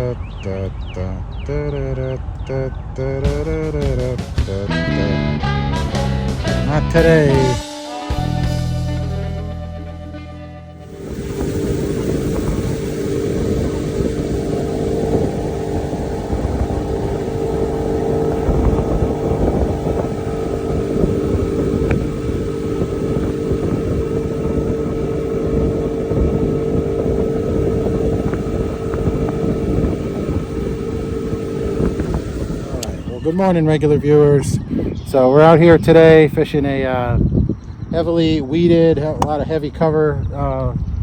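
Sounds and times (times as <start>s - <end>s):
outboard motor running: 6.0s - 7.6s, 10.8s - 33.7s
rumble of wind and water: 10.9s - 33.2s.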